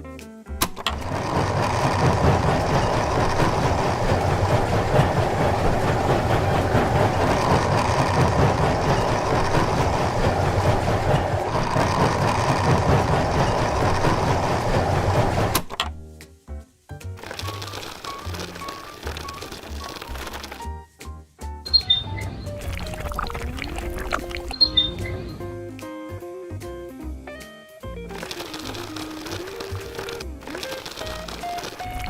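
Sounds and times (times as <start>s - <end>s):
small motor rattling: 0.7s - 15.8s, 17.2s - 20.7s, 28.1s - 32.0s.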